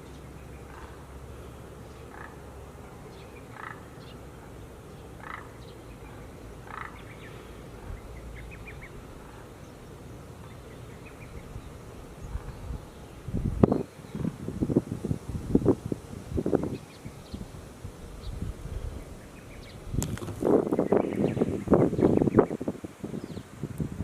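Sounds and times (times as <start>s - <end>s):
frogs croaking: 0.4s - 12.8s.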